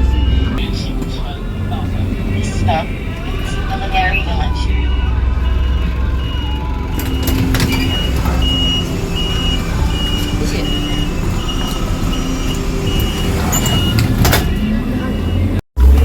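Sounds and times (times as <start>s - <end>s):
engine idling: 0.0s - 16.0s
electronic warning beeper: 3.6s - 15.6s.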